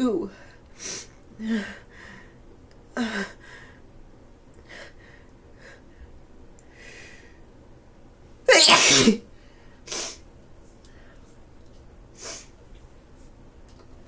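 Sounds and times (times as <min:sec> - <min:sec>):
woman sneezing loudly: 0:08.5 - 0:09.2.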